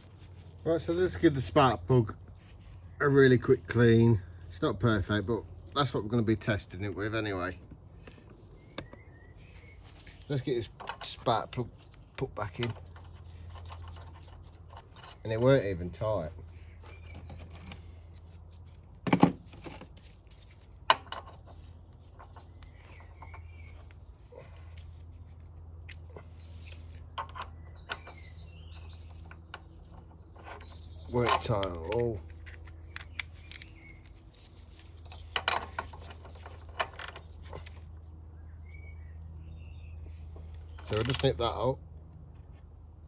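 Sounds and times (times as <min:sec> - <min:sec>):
metallic clatter: 0:11.9 - 0:15.6, 0:35.0 - 0:37.7.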